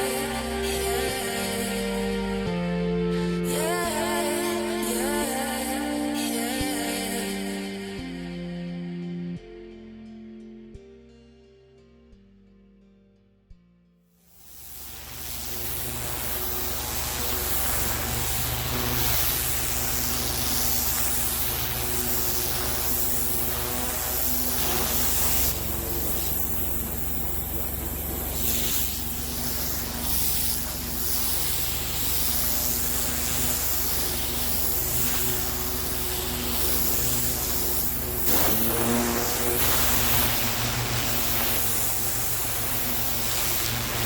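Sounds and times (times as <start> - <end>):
pressure washer jet hissing on paving: 0.0 - 2.6, 14.3 - 44.0
pressure washer engine hum: 0.0 - 7.1, 14.3 - 44.0.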